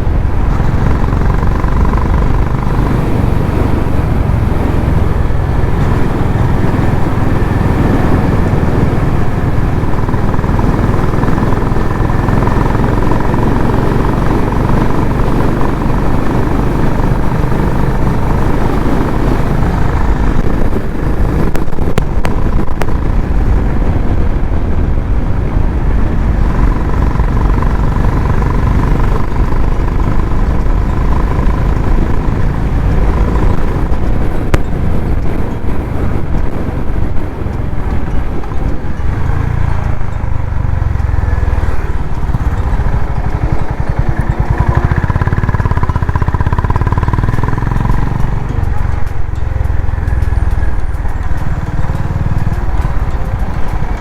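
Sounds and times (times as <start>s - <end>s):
motorcycle engine and exhaust: 0.0s - 54.0s
wind rushing over microphone: 0.0s - 54.0s.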